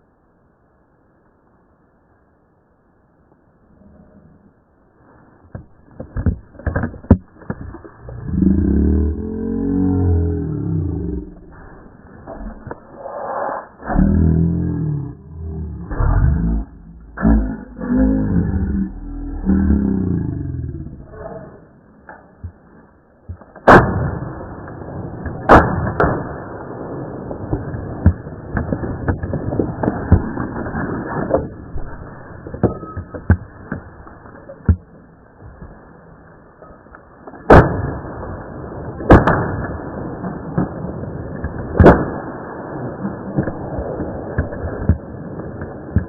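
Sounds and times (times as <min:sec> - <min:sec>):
rough crackling noise: 0:03.3 - 0:46.0
gunshots: 0:23.6 - 0:27.9, 0:37.5 - 0:38.3, 0:39.0 - 0:39.9.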